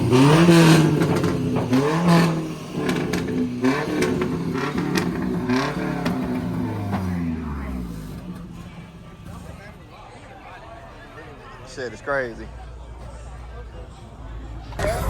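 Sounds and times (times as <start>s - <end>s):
car engine revving: 0.0s - 9.9s, 14.7s - 15.0s.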